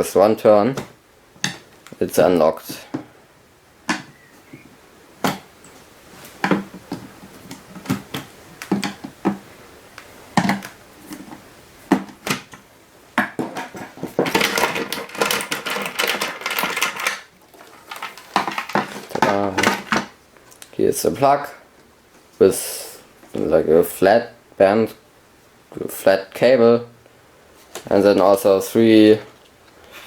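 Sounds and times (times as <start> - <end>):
plastic case clicks and knocks: 6.4 - 9.4
plastic parts rattling: 13.4 - 20.1.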